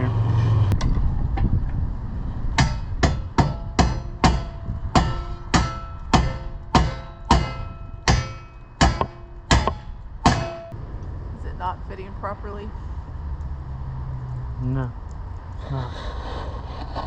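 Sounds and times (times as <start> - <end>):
hammer striking metal: 2.6 - 10.8.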